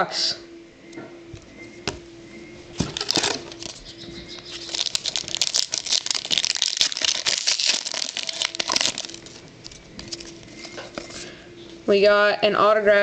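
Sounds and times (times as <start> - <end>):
wrapper crinkling and rustling: 2.8 - 11.3.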